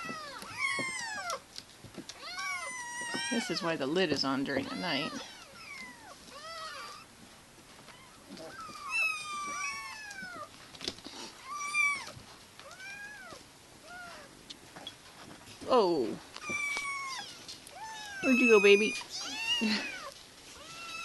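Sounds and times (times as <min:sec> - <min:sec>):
kittens mewing: 0:02.2 - 0:03.8, 0:04.6 - 0:07.1, 0:07.9 - 0:10.5, 0:11.2 - 0:14.4, 0:16.4 - 0:21.0.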